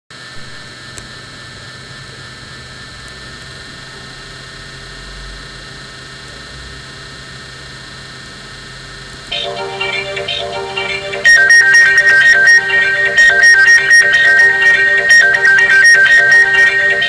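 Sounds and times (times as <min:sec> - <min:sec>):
electrical hum and hiss: 0:00.2 - 0:17.0
low drone: 0:09.3 - 0:17.0.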